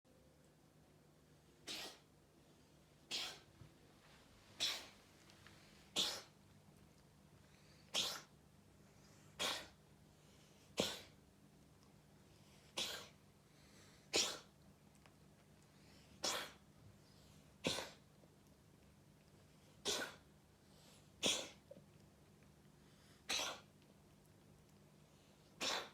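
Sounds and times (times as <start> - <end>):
cat sneezing: 1.6 - 2.1, 3.0 - 3.5, 4.6 - 5.0, 5.9 - 6.4, 7.9 - 8.4, 9.4 - 9.8, 10.8 - 11.2, 12.7 - 13.2, 14.1 - 14.6, 16.2 - 16.6, 17.6 - 18.0, 19.8 - 20.3, 21.2 - 21.7, 23.2 - 23.7, 25.6 - 25.9.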